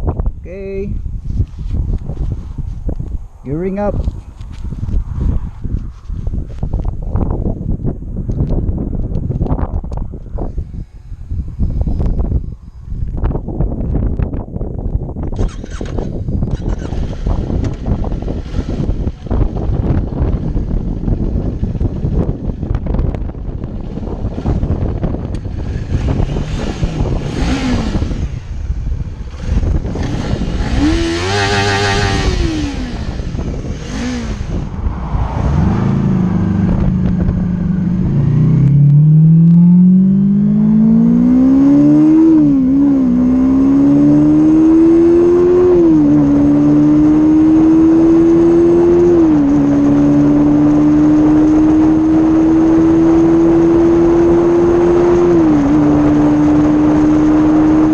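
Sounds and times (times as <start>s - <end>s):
wind buffeting microphone: 0.0s - 57.9s
motorcycle engine revving: 15.2s - 57.9s.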